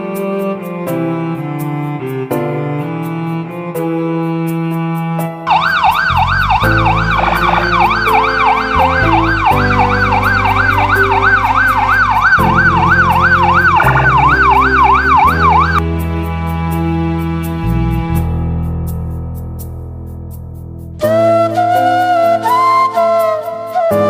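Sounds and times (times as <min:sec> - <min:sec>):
string and piano music: 0:00.0 - 0:24.0
police siren fast wail: 0:05.5 - 0:15.8.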